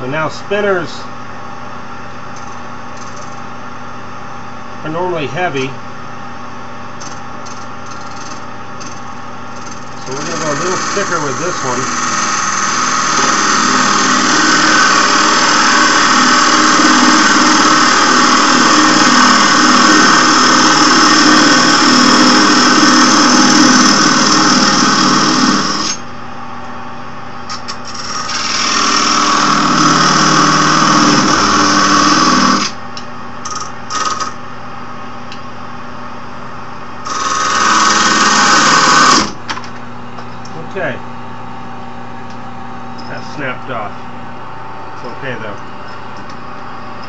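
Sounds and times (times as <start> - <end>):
wood lathe humming: 9.6 - 26.0, 27.9 - 32.8, 33.5 - 34.4, 37.0 - 39.4
lathe tool cutting wood: 10.0 - 26.0, 28.0 - 32.8, 37.0 - 39.4.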